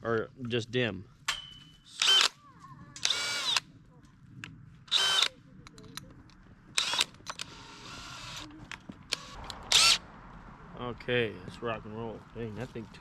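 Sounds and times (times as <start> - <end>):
hammer drill motor whining: 2.0 - 2.3, 3.0 - 3.6, 4.9 - 5.3, 6.8 - 8.4.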